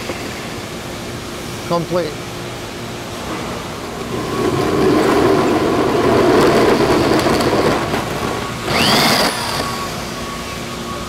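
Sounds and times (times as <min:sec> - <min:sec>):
drill whine: 0:04.4 - 0:11.0
power drill grinding drywall: 0:05.1 - 0:09.8.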